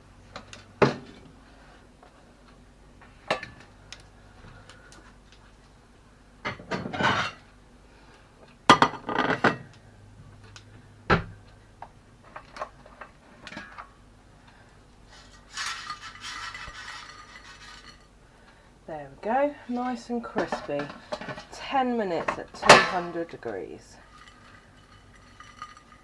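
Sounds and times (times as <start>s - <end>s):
metal tongs clinking on basket: 15.1s - 18.1s, 22.2s - 26.0s
rough scraping rustle: 15.1s - 18.1s.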